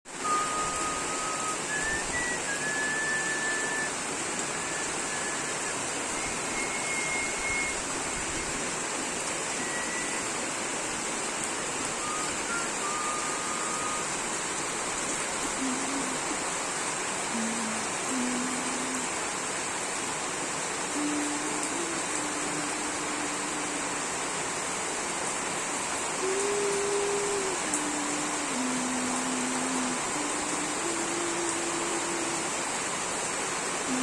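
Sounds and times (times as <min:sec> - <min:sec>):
rain falling steadily: 0:00.1 - 0:34.0
whistle-like notes: 0:00.2 - 0:08.5, 0:09.6 - 0:10.3, 0:12.0 - 0:14.2.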